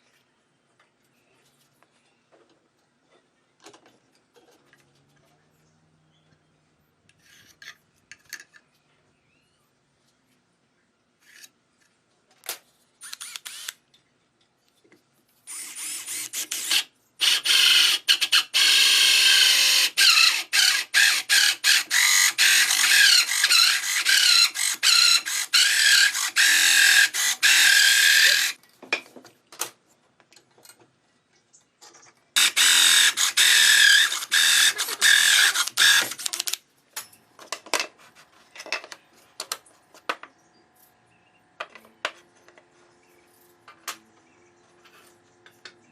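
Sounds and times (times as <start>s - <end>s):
power tool cutting wood: 15.5s - 28.6s, 32.4s - 36.5s.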